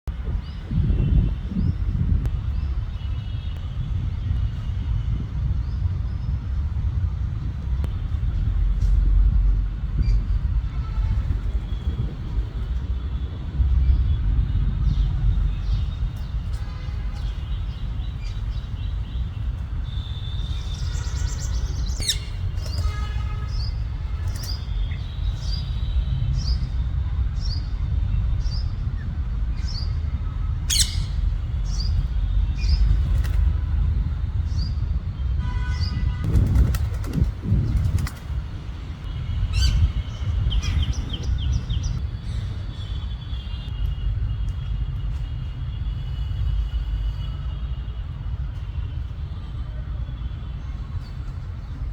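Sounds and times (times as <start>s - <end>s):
steady low rumble: 0.0s - 16.6s
parrot chirping: 30.7s - 31.2s.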